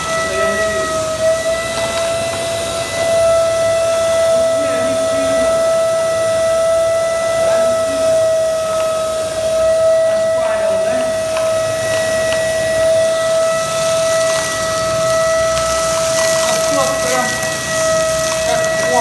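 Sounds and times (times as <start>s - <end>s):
vacuum cleaner motor whining: 0.0s - 19.0s.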